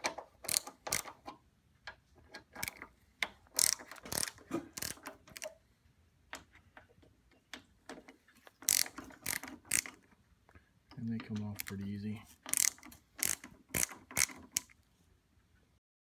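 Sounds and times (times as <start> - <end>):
ratchet wrench clicking: 0.4 - 1.2, 2.6 - 2.8, 3.6 - 5.5, 8.6 - 10.0, 11.5 - 11.8, 12.5 - 14.7.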